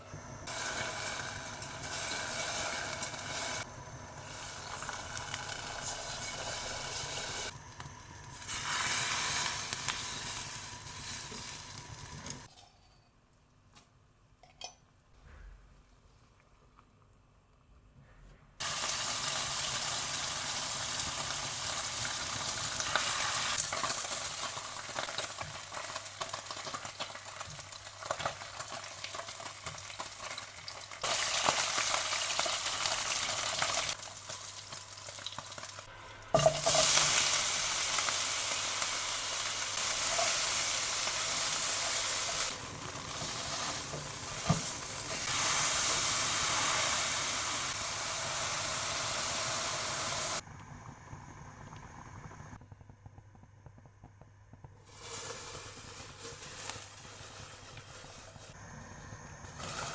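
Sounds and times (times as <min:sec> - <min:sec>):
deep-frying sizzle with crackling pops: 0:00.4 - 0:12.5, 0:18.6 - 0:57.8.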